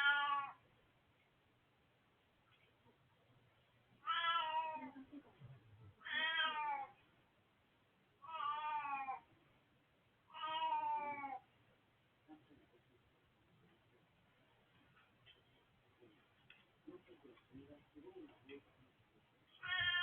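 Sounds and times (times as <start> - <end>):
cat meowing: 0.0 - 0.6, 4.0 - 5.0, 6.0 - 7.0, 8.2 - 9.3, 10.3 - 11.4, 19.6 - 20.0.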